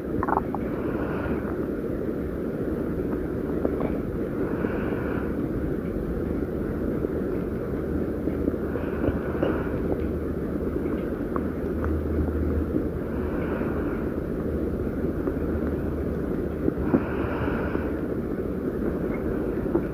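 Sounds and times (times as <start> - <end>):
stomach growling: 0.1 - 0.7.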